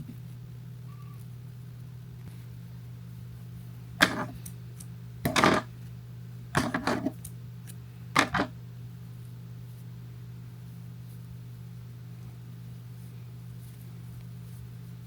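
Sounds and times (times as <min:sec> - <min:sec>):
steady low hum: 0:00.0 - 0:15.0
small objects clicking and clattering: 0:05.3 - 0:05.7, 0:06.6 - 0:07.3, 0:08.2 - 0:08.5.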